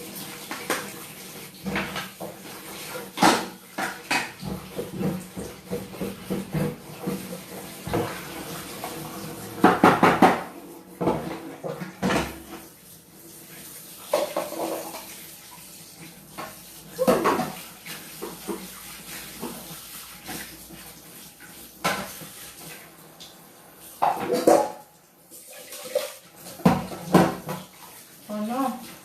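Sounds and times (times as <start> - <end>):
bowls and utensils clattering: 14.1 - 15.2, 16.4 - 20.5, 24.0 - 27.7.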